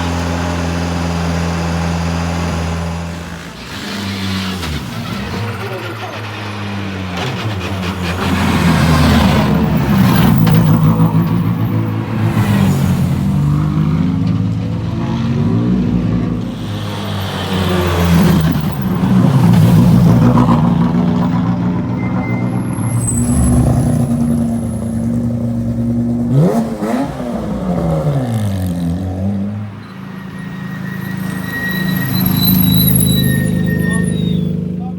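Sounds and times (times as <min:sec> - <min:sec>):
rally car engines revving: 0:00.0 - 0:34.9.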